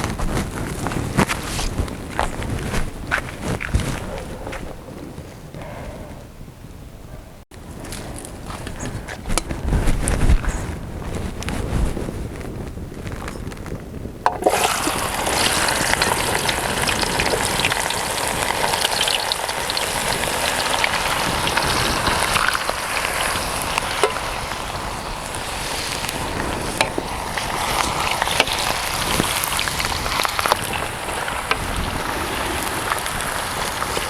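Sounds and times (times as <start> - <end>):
potatoes sizzling in hot oil: 14.3 - 34.0.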